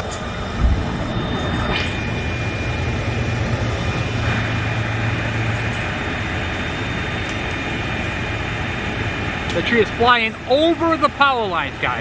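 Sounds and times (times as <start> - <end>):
heavy crane engine running: 0.0 - 12.0
thin high whine: 0.0 - 12.0.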